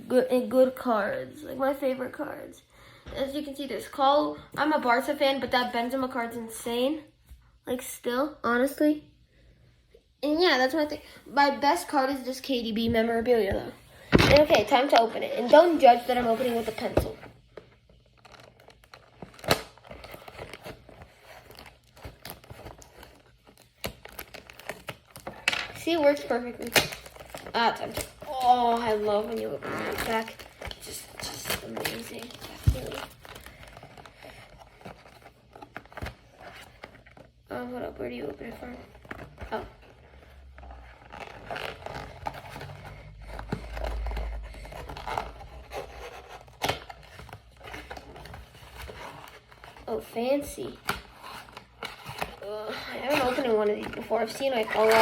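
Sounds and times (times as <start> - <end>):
packaging tearing and rustling: 17.9 - 37.4, 38.8 - 50.0, 50.6 - 55.0.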